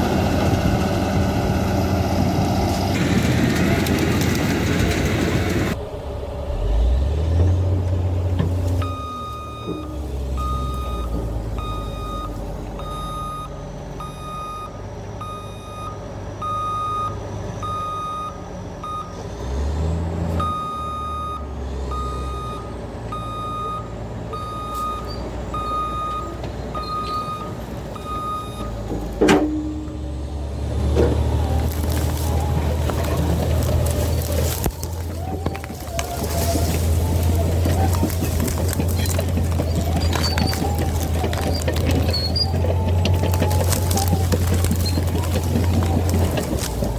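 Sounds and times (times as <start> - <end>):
bulldozer diesel engine running: 0.0 - 46.9
reverse alarm beeping: 8.8 - 19.1, 20.4 - 28.8.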